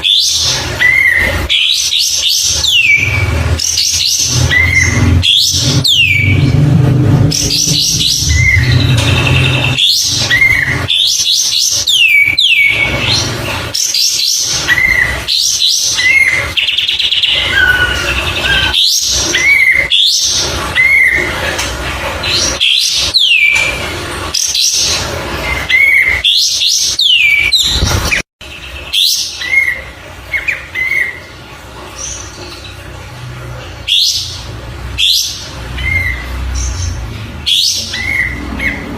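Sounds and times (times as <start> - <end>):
low rumble: 4.5 - 9.8.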